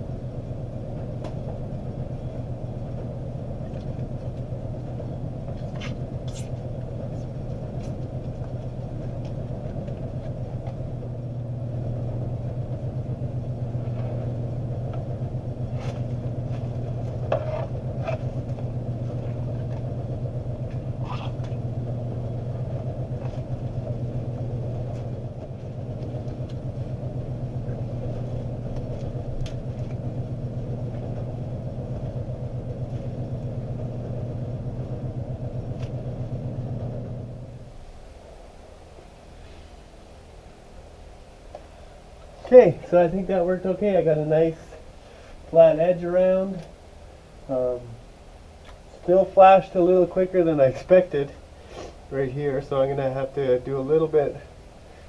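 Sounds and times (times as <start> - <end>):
electric power sander running: 5.9 - 37.6.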